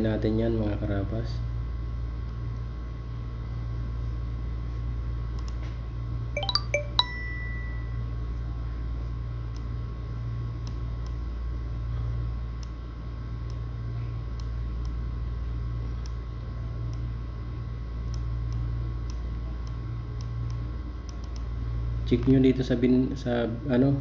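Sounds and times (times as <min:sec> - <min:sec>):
steady low hum: 0:00.0 - 0:24.0
short bright dings: 0:06.4 - 0:08.0.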